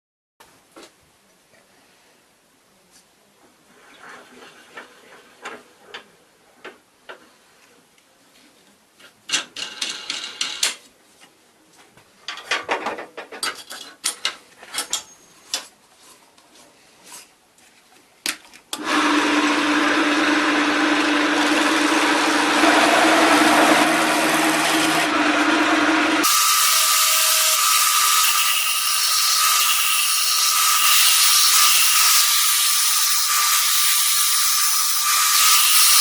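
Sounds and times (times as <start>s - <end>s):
wood and tools scraping and knocking: 3.4s - 18.8s
power tool motor running: 18.8s - 36.0s.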